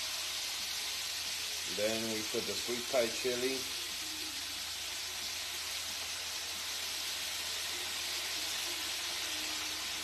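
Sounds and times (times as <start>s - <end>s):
sauce sizzling in a hot pan: 0.0s - 10.0s.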